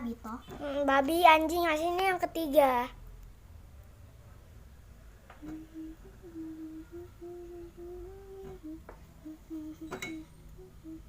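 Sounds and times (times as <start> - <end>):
person humming a slow tune: 5.4 - 11.0.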